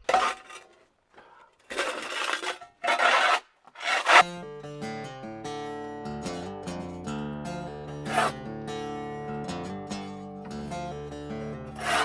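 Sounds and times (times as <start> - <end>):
scraping dry grain: 1.7 - 4.2, 8.1 - 8.3, 11.8 - 12.0
acoustic guitar music: 4.2 - 12.0.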